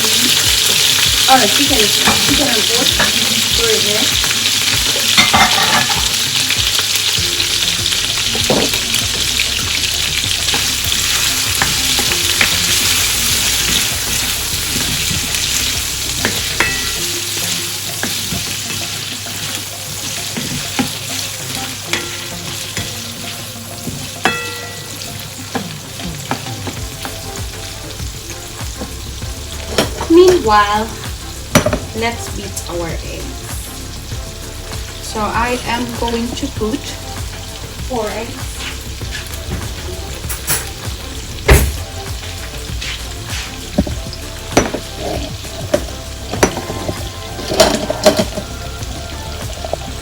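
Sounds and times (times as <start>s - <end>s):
meat sizzling in a frying pan: 0.0s - 50.0s
utensil clinking against pan: 4.8s - 6.2s, 16.2s - 17.2s.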